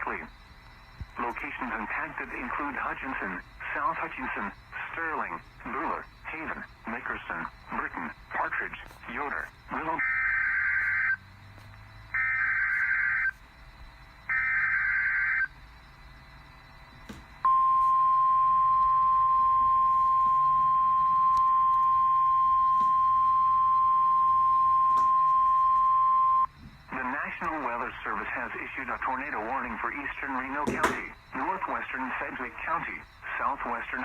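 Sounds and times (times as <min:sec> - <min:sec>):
warbling digital data bursts: 0:00.0 - 0:11.3, 0:12.0 - 0:16.9, 0:26.1 - 0:34.0
steady warning alarm tone: 0:00.0 - 0:34.0.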